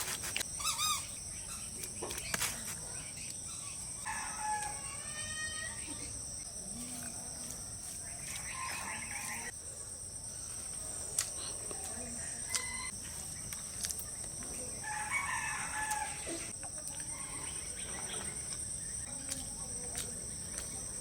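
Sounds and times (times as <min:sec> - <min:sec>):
insects buzzing: 0:00.0 - 0:21.0
rooster crowing: 0:04.0 - 0:05.8, 0:08.4 - 0:09.5, 0:14.8 - 0:16.5.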